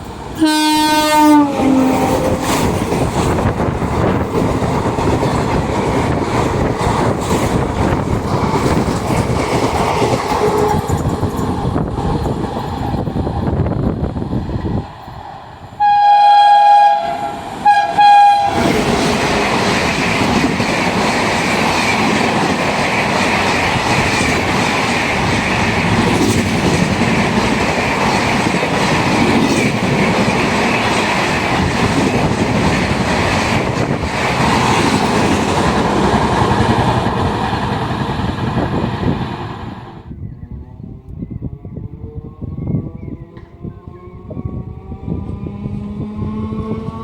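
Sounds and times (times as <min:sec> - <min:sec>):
locomotive horn: 0:00.4 - 0:02.7, 0:15.8 - 0:18.9
train wheels clattering: 0:01.7 - 0:13.2, 0:18.5 - 0:38.6.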